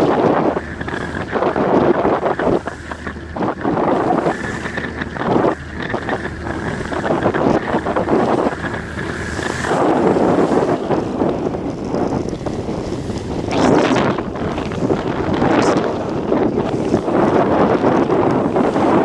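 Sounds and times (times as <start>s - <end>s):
steady low hum: 0.0s - 19.0s
wind buffeting microphone: 0.0s - 19.0s.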